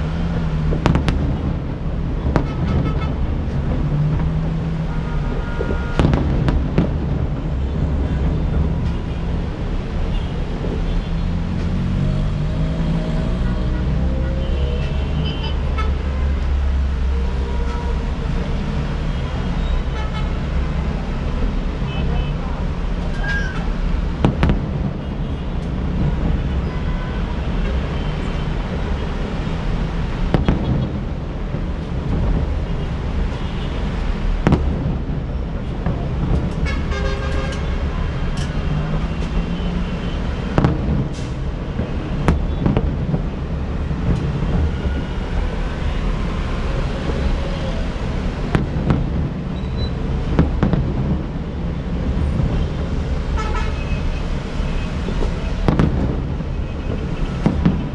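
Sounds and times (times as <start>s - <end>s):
city traffic noise: 0.0s - 57.9s
distant fireworks bangs: 0.6s - 9.2s, 24.1s - 25.2s, 30.0s - 37.8s, 38.8s - 47.3s, 48.2s - 52.9s, 55.1s - 57.9s
vehicle horn: 4.9s - 6.0s, 36.6s - 37.8s, 53.4s - 54.1s.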